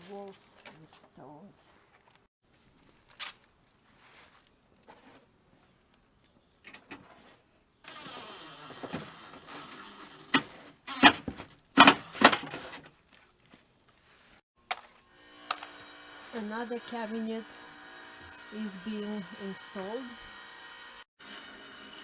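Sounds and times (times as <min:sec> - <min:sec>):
knocks and clatter of cabinet frames: 0:10.4 - 0:12.7.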